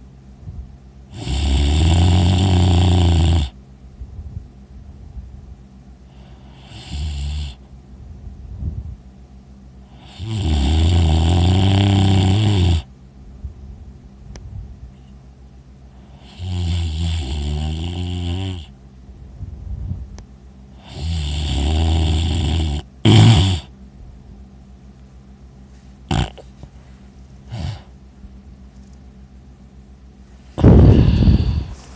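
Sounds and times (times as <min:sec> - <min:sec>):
person snoring loudly: 0:01.1 - 0:03.6, 0:06.2 - 0:07.6, 0:09.9 - 0:12.9, 0:16.1 - 0:18.7, 0:20.8 - 0:23.7, 0:26.1 - 0:26.5, 0:27.5 - 0:27.9, 0:30.6 - 0:31.8.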